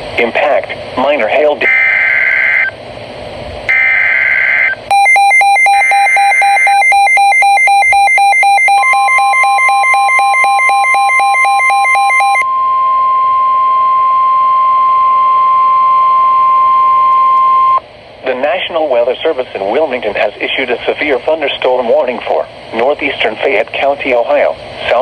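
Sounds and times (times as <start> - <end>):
rapid pulsing beep alarm: 1.7 - 2.7, 3.7 - 15.2
steady single-pitch alarm tone: 1.7 - 2.8, 3.7 - 17.8
screeching digital data bursts: 3.7 - 12.4.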